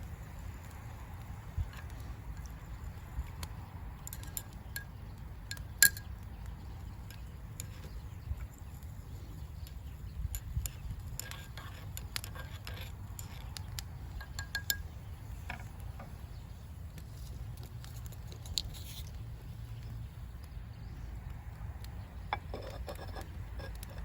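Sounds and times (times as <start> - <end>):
hard objects clinking: 3.3 - 6.2, 10.3 - 15.7.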